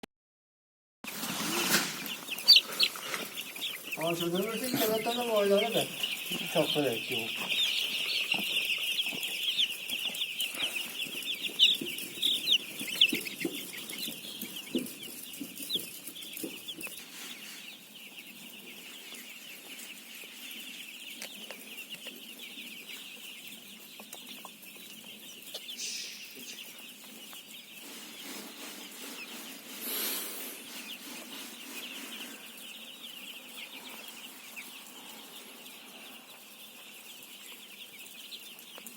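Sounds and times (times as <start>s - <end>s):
chicks peeping: 1.0s - 38.9s.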